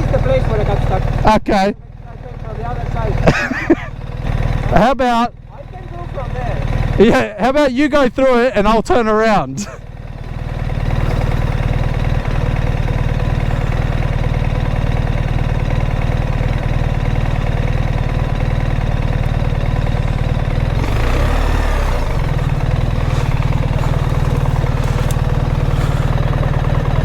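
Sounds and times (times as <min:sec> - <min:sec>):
motorcycle engine idling: 0:00.0 - 0:27.0.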